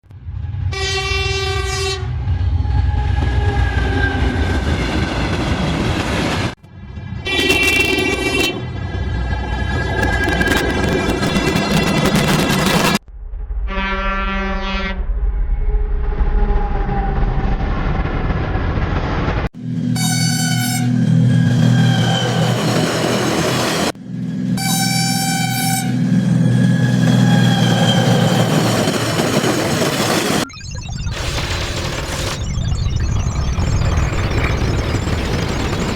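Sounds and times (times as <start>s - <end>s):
steam train whistle: 0.7s - 2.1s, 7.3s - 8.6s, 19.9s - 21.1s, 24.5s - 26.2s
steam locomotive whistle: 0.7s - 4.4s, 7.2s - 8.7s, 19.8s - 22.7s, 24.4s - 28.6s.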